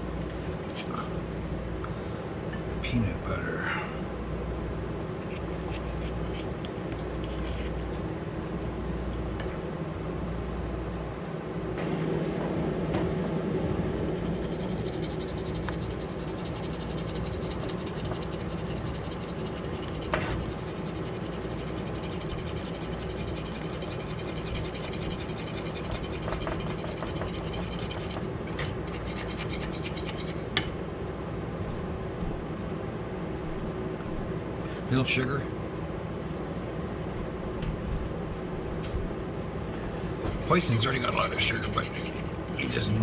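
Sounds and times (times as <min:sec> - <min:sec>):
steady background hum: 0:00.0 - 0:43.0
spoon scraping in a saucepan: 0:14.1 - 0:30.4, 0:40.3 - 0:43.0.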